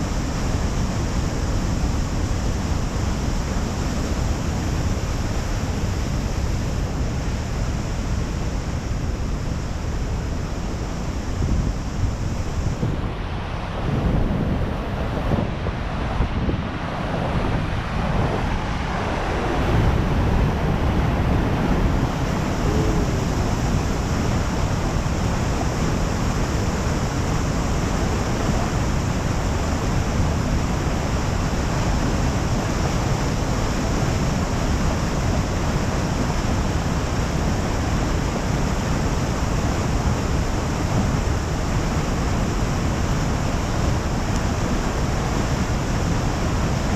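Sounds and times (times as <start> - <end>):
water rushing: 0.0 - 46.9
wind on microphone: 0.0 - 46.9.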